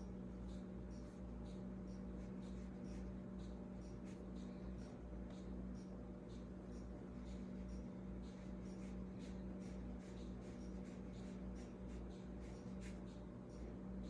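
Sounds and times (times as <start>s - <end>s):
steady low hum: 0.0s - 14.0s
paintbrush stroking on paper: 8.2s - 13.0s.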